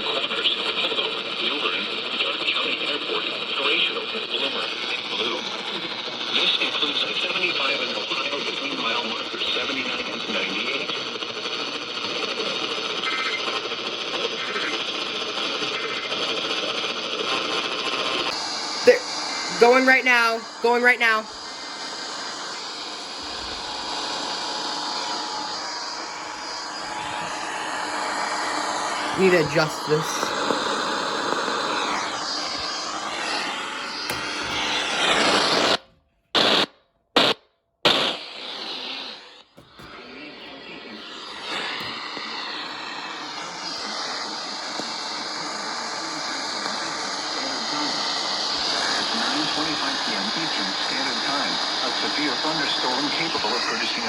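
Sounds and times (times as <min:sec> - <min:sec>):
radio static hiss: 0:00.0 - 0:35.8, 0:36.4 - 0:54.0.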